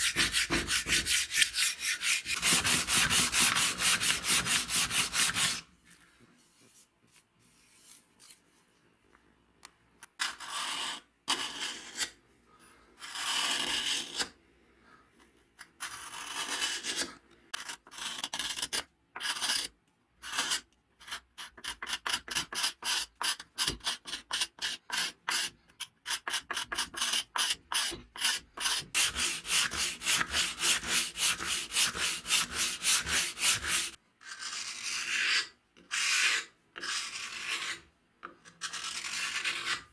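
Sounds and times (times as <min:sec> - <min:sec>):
sandpaper rubbing on wood: 0:00.0 - 0:05.6, 0:29.0 - 0:34.0.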